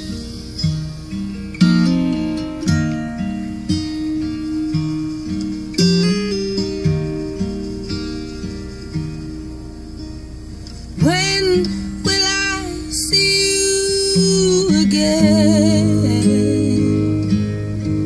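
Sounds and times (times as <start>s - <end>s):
plucked acoustic guitar chords: 0.0s - 18.0s.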